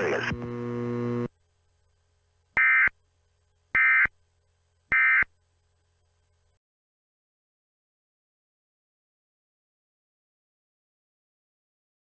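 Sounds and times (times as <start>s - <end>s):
digital data tone bursts: 4.9s - 5.3s.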